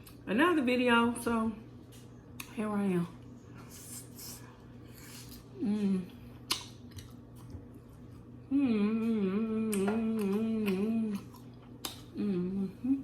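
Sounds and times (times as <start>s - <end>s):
woman humming: 5.6s - 6.2s, 8.5s - 11.3s, 12.1s - 13.0s.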